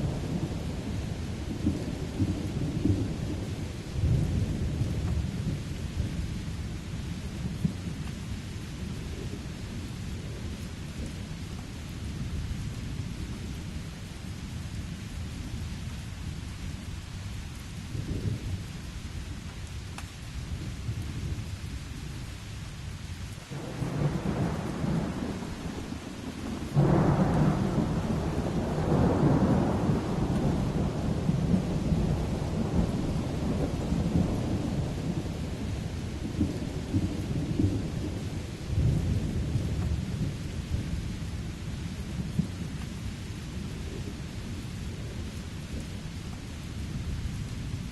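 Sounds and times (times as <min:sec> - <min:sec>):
steady rain: 0:00.0 - 0:47.9
thunder rumbling: 0:23.5 - 0:42.8.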